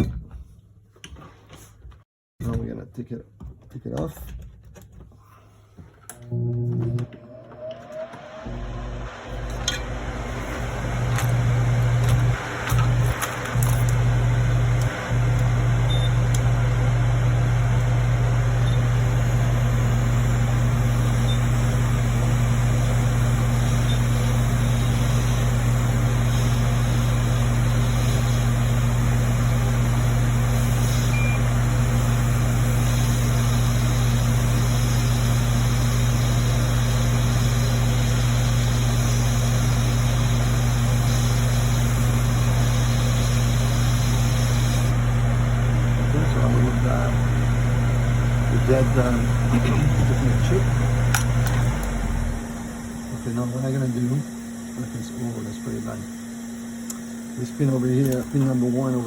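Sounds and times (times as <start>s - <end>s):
heat gun blowing: 8.4s - 45.2s.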